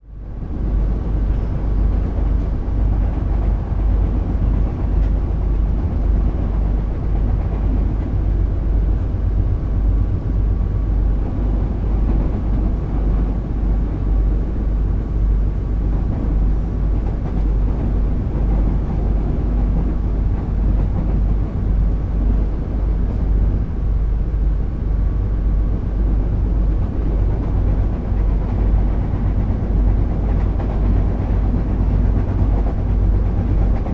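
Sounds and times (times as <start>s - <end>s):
train rumbling at speed: 0.0s - 33.9s
faint steady tone: 8.0s - 23.9s.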